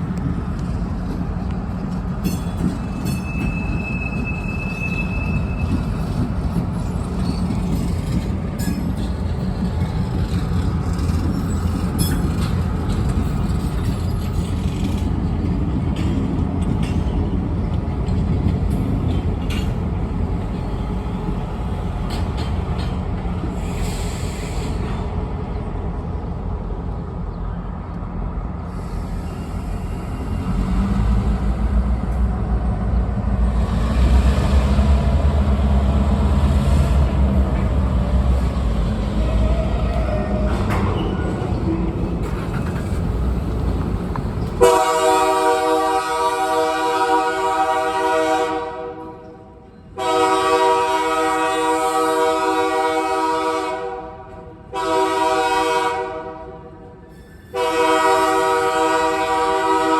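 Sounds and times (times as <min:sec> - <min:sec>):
freight train rumbling: 0:00.0 - 0:59.9
train wheel squeal: 0:02.2 - 0:15.2, 0:20.6 - 0:25.2, 0:28.6 - 0:31.2, 0:38.3 - 0:44.7, 0:56.9 - 0:57.8
wheels clicking over rail joints: 0:05.4 - 0:20.6.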